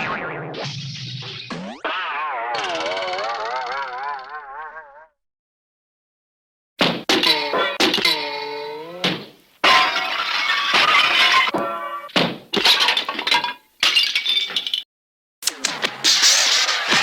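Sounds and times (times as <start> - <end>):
glass breaking: 9.6 - 14.8.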